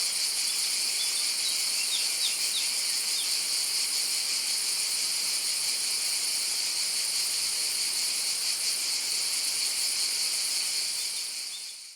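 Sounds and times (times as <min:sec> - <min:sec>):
cicadas buzzing: 0:00.0 - 0:05.4.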